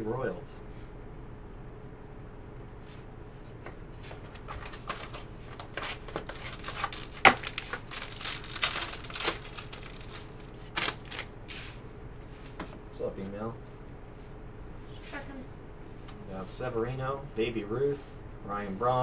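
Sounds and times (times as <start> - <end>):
cards rustling: 4.0 - 11.8
wrapper crinkling and tearing: 4.3 - 11.5.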